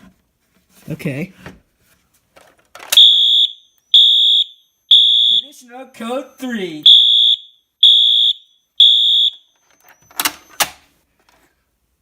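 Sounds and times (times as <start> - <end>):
fire alarm horn beeps: 3.0 - 5.6, 6.8 - 9.6.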